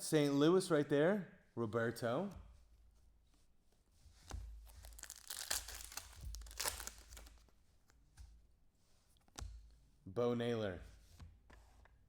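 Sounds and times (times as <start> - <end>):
wrapper crinkling: 4.7 - 7.4
foil pack tearing: 4.8 - 7.3.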